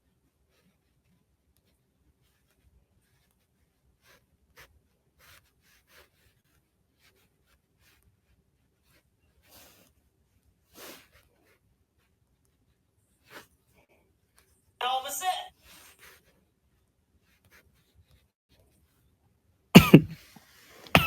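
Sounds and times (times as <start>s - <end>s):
breathy puffs: 19.8s - 21.0s.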